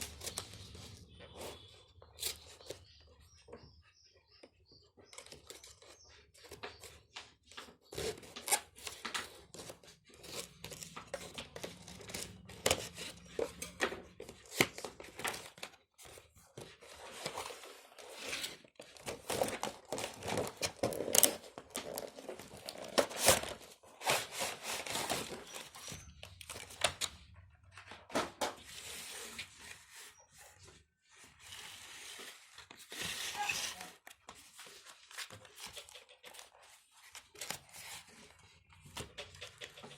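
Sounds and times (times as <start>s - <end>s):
packaging tearing and crinkling: 19.0s - 25.9s.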